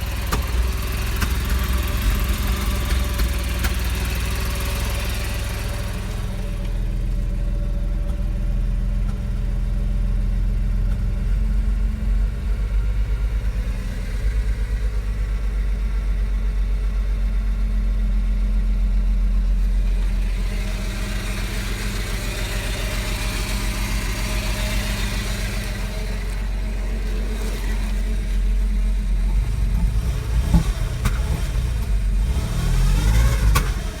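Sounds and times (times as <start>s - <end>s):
car engine idling unevenly: 0.0s - 34.0s
low engine knocking thumps: 0.0s - 34.0s.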